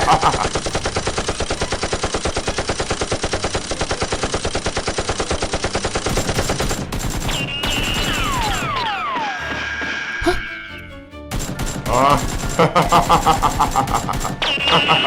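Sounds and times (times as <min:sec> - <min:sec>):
rapid automatic gunfire: 0:00.0 - 0:08.9, 0:11.3 - 0:15.0
high whistling tone: 0:07.3 - 0:10.8.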